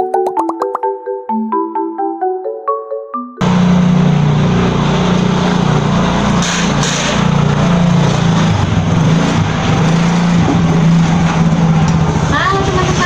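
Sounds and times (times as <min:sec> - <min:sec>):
vehicle engine running: 0:03.4 - 0:13.0.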